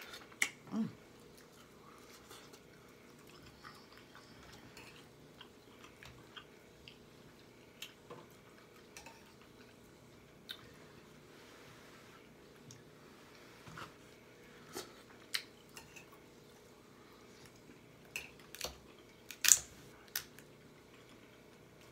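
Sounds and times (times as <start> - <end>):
person chewing: 1.2 - 9.8.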